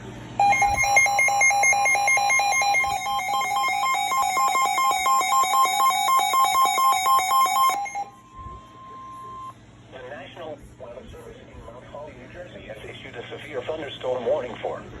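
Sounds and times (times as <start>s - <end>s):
rapid electronic alarm beeping: 0.4s - 9.5s.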